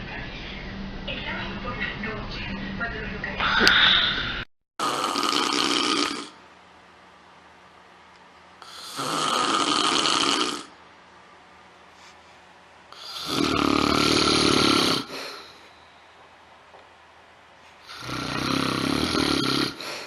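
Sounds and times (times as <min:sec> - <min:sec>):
person snoring: 0:04.8 - 0:06.4, 0:08.6 - 0:10.8, 0:12.9 - 0:15.7, 0:17.8 - 0:20.0.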